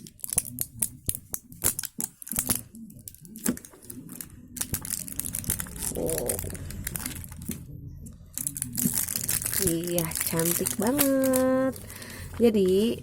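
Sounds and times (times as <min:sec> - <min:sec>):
packaging crinkling and tearing: 0:00.0 - 0:07.6, 0:08.3 - 0:13.0.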